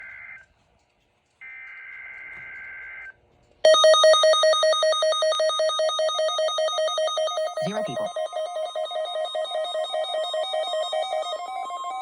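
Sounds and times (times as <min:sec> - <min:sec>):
fast-pulsing electronic alert beeps: 0:04.0 - 0:12.0.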